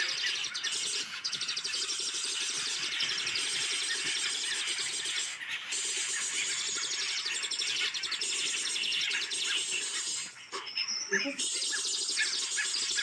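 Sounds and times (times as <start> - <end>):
birds chirping: 0.0 - 13.0.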